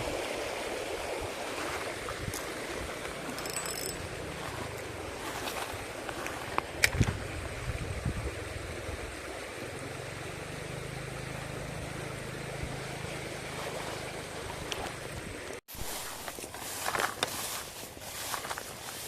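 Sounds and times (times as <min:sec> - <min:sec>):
small stream rushing: 0:00.0 - 0:19.0
low wind rumble on microphone: 0:04.1 - 0:09.8.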